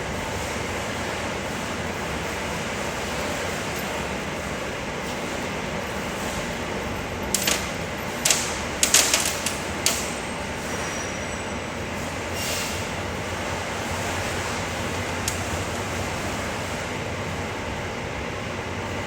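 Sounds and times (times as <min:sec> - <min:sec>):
sharp clicks and knocks of tools: 0:07.3 - 0:10.2.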